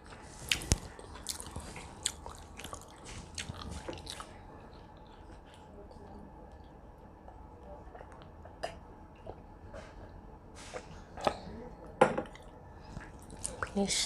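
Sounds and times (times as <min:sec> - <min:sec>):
person chewing: 0:00.0 - 0:06.8, 0:12.3 - 0:13.7.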